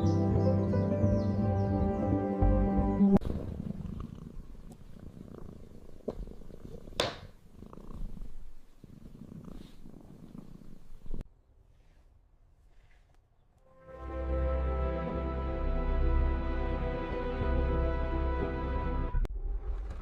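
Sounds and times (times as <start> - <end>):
cat purring: 3.1 - 11.2.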